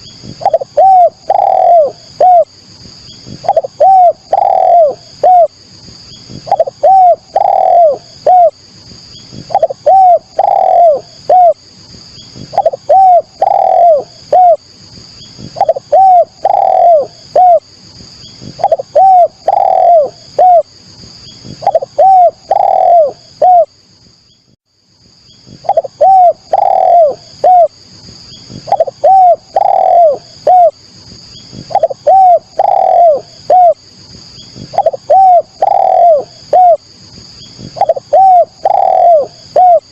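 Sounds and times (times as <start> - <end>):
dove cooing: 0.2 - 2.6, 3.2 - 5.6, 6.3 - 8.6, 9.3 - 11.6, 12.4 - 14.6, 15.4 - 17.7, 18.4 - 20.7, 21.4 - 23.7, 25.5 - 27.8, 28.4 - 30.8, 31.5 - 33.8, 34.4 - 36.8, 37.6 - 39.9.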